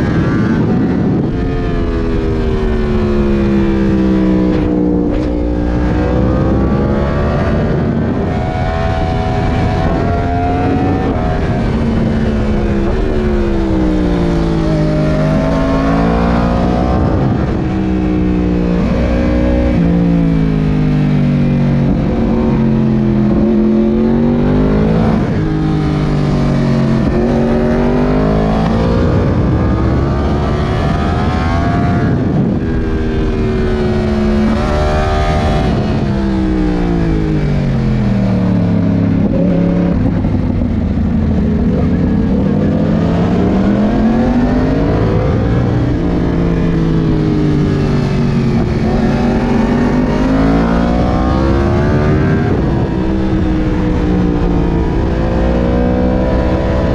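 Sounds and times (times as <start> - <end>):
motorcycle engine revving: 0.0 - 56.9.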